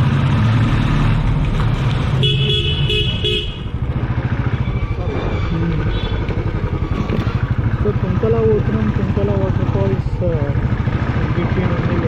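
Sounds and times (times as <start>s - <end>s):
engine running: 0.0s - 12.0s
vehicle horn beeps: 2.2s - 3.7s, 5.8s - 6.4s.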